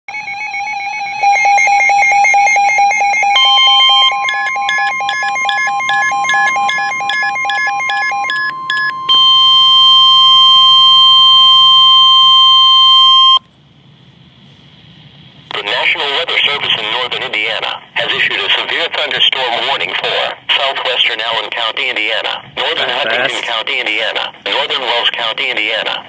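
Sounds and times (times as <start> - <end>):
continuous loud alert tone: 0.1 - 13.4, 15.6 - 26.0
rapid rhythmic beeping: 0.6 - 13.4.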